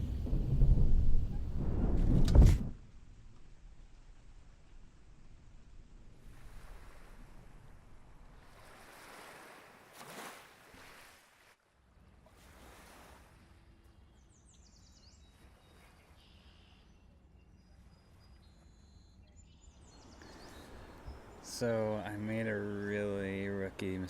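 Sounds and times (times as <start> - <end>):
faint outdoor ambience: 11.8 - 24.0.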